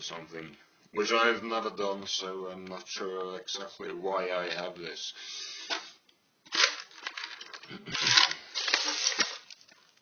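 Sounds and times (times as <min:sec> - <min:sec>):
rustling and crinkling: 0:06.5 - 0:10.0.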